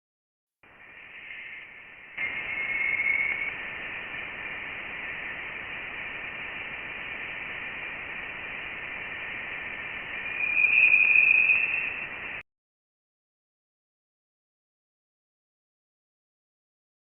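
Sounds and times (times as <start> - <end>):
eerie static hiss: 0.6 - 12.4
thin whistling tone: 0.7 - 4.0, 9.2 - 12.4.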